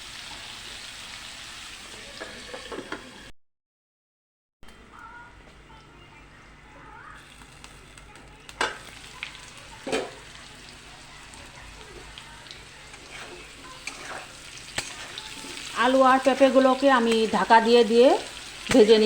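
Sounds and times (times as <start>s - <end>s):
food sizzling in hot oil: 0.0s - 3.3s, 7.2s - 19.0s.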